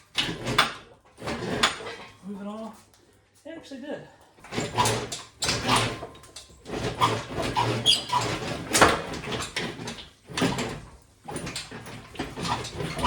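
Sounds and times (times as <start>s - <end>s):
engine hoist creaking and squeaking: 4.4s - 13.0s
metal squeaks and clunks: 4.5s - 13.0s.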